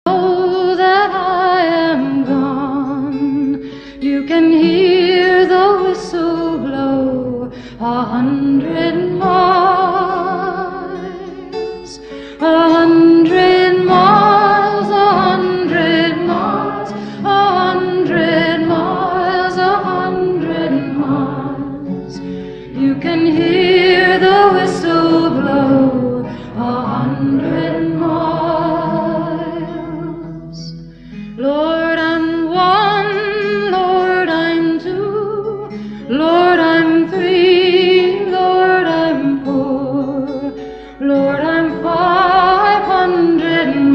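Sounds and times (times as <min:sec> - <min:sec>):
person singing with vibrato: 0:00.1 - 0:43.9
background music: 0:02.6 - 0:33.4.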